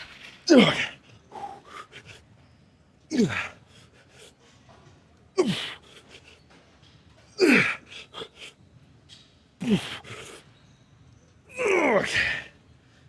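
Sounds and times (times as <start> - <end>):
man grunting with effort: 0.5 - 2.1, 3.1 - 3.6, 5.4 - 6.1, 7.4 - 8.4, 9.6 - 10.2, 11.5 - 12.5.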